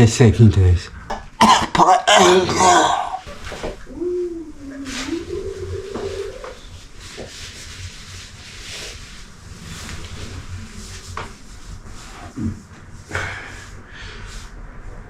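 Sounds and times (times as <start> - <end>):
man humming: 3.9 - 6.6.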